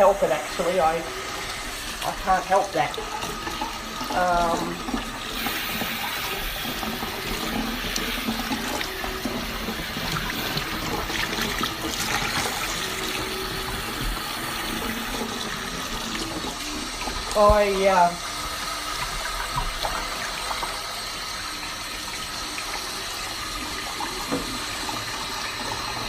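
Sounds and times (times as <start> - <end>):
water running from a tap: 0.0 - 26.0.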